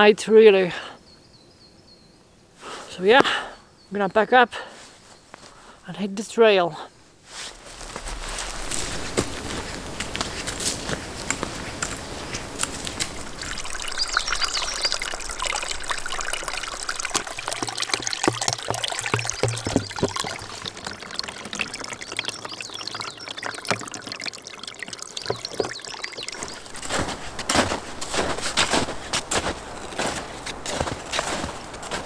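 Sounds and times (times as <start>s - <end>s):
small crackling drips: 7.2s - 32.0s
water trickling and splashing: 7.2s - 32.0s.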